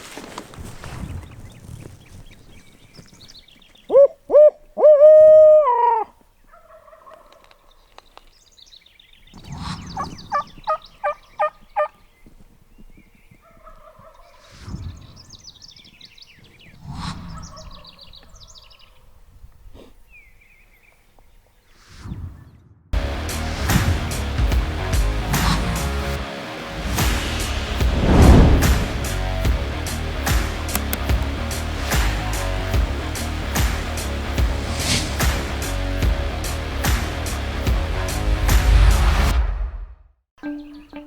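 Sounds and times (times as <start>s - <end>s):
small birds chirping: 0.9s - 4.8s, 5.8s - 21.8s, 40.4s - 41.0s
turkey yelps: 3.9s - 7.6s, 9.9s - 12.0s, 13.4s - 14.5s
turkey calls: 3.9s - 7.8s, 9.7s - 12.0s, 13.4s - 14.5s.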